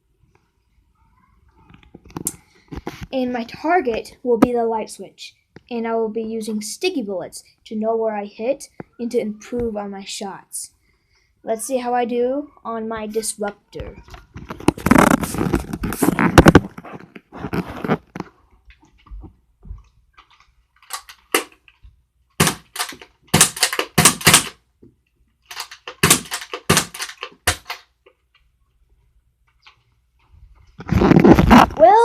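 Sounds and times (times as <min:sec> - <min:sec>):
toy dart blaster clacking: 0:22.4 - 0:24.6, 0:25.5 - 0:27.8.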